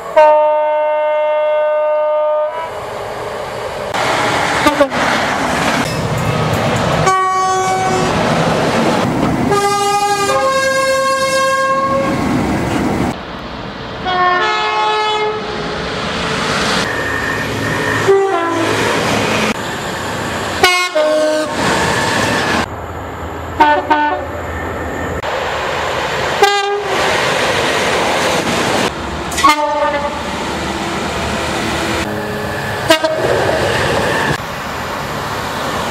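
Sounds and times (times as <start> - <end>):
passing trains running noise: 0.0 - 35.9
train horn blasts: 0.1 - 2.8, 4.6 - 5.0, 7.0 - 8.2, 9.5 - 12.2, 14.0 - 15.5, 18.0 - 18.8, 20.6 - 21.6, 23.6 - 24.3, 26.4 - 26.9, 29.4 - 30.2, 32.0 - 33.3.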